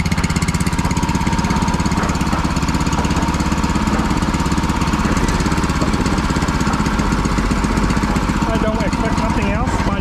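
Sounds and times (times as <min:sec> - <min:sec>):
concrete mixer engine running: 0:00.0 - 0:10.0.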